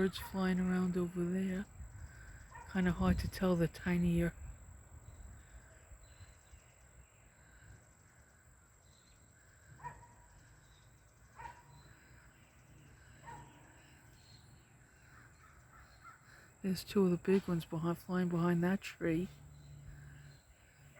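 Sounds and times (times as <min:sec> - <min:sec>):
faint bird calls: 0:04.4 - 0:17.9, 0:19.1 - 0:20.9.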